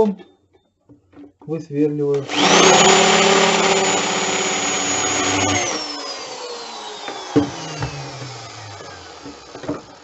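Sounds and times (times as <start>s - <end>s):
electric drill whine winding down: 2.2s - 10.0s.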